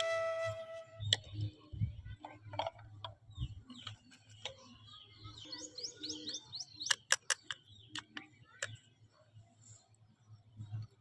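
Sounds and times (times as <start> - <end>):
bird chirping: 3.3 - 8.9.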